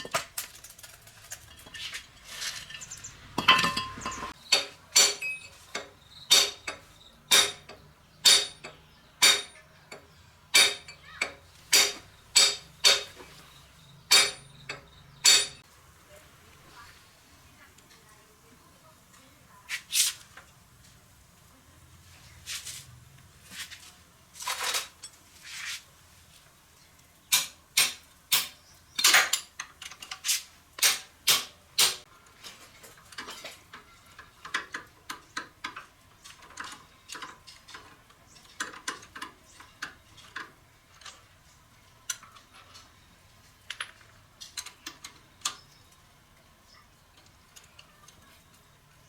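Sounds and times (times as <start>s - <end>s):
metal tools clinking: 0.0s - 15.6s, 24.4s - 25.2s.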